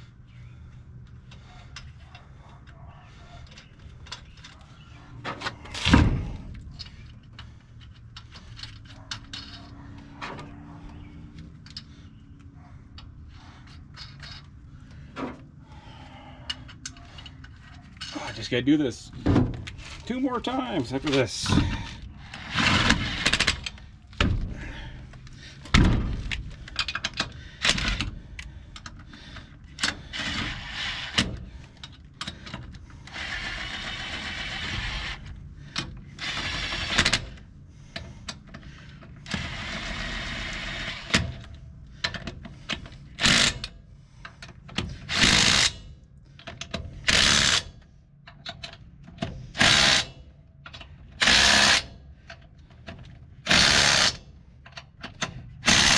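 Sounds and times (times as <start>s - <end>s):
handheld power tool running: 51.2s - 51.8s, 53.5s - 54.2s, 55.6s - 55.9s.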